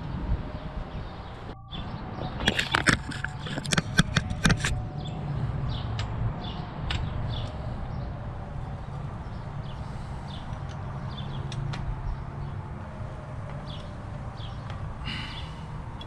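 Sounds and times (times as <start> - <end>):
metallic clicks and knocks: 2.4 - 4.8.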